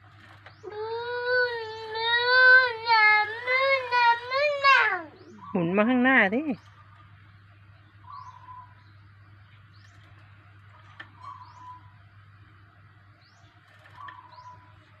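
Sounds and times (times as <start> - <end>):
bird calls: 4.3 - 12.3, 13.2 - 15.0
high bird chirps: 7.9 - 9.0, 11.2 - 12.0, 13.2 - 14.8.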